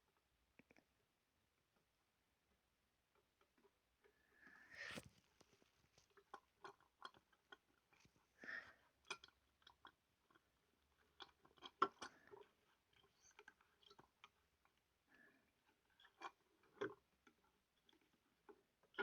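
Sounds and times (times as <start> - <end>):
soft rustles: 4.4 - 6.3.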